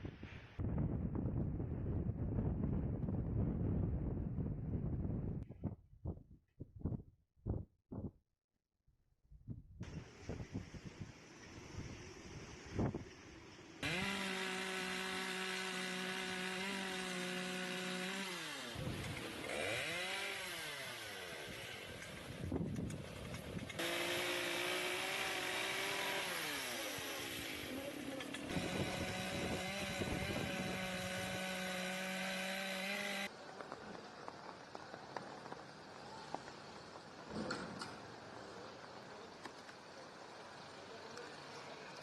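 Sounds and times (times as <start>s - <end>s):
chainsaw cutting wood: 13.8s - 33.3s.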